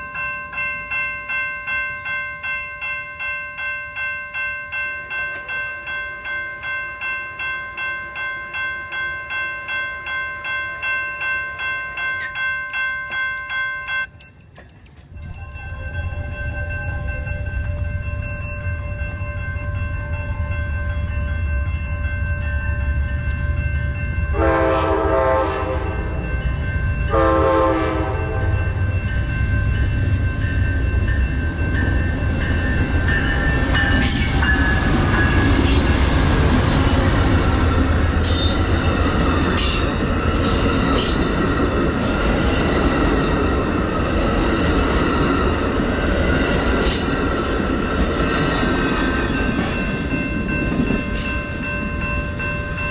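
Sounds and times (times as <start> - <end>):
train rumble: 12.7 - 52.9
wheels clattering over rail joints: 14.0 - 17.1
train horn blasts: 24.3 - 26.2, 27.1 - 28.8.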